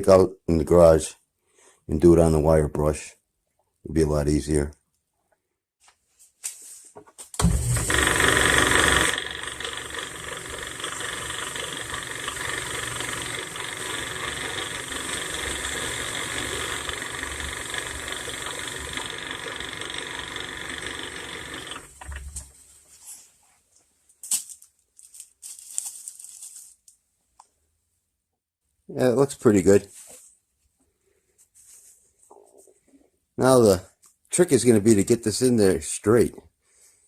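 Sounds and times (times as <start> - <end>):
wire wheel brush scouring metal: 7.6 - 22.4.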